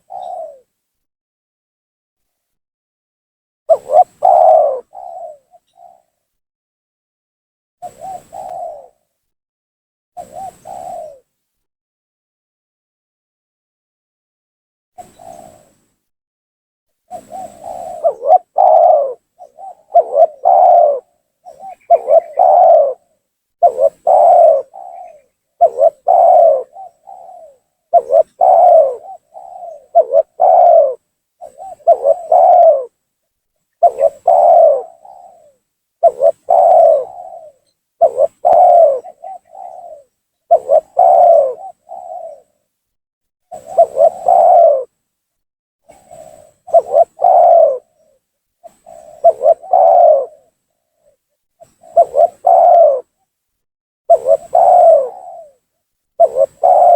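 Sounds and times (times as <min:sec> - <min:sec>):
dove cooing: 0:00.0 - 0:00.8, 0:03.7 - 0:06.2, 0:07.8 - 0:09.1, 0:10.2 - 0:11.4, 0:15.0 - 0:15.7, 0:17.1 - 0:33.0, 0:33.8 - 0:42.6, 0:43.5 - 0:45.0, 0:45.9 - 0:53.3, 0:54.1 - 0:56.9.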